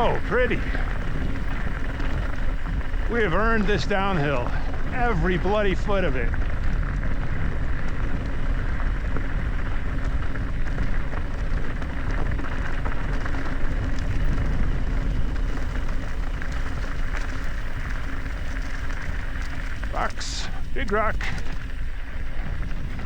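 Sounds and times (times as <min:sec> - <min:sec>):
tyres rattling over gravel: 0:00.0 - 0:23.0
wind rush on microphone: 0:00.0 - 0:23.0.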